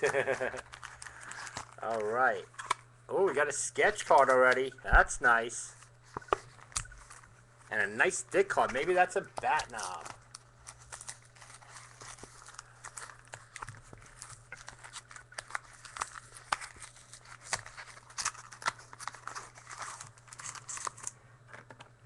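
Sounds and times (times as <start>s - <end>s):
wrapper crinkling and tearing: 0.0s - 2.8s, 8.4s - 21.2s.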